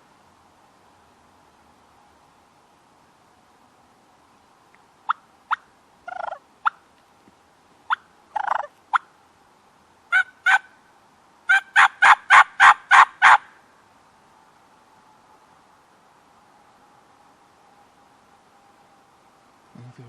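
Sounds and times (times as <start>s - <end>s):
turkey clucks: 5.1s - 6.8s, 7.9s - 9.0s, 11.5s - 13.4s
turkey yelps: 5.1s - 6.8s, 7.9s - 9.0s, 10.1s - 10.7s, 11.5s - 13.5s.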